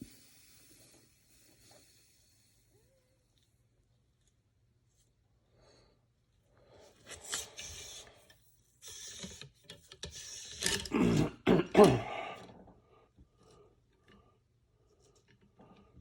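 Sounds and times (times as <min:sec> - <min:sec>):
man clearing his throat: 0:10.9 - 0:12.4
man coughing: 0:10.9 - 0:12.4.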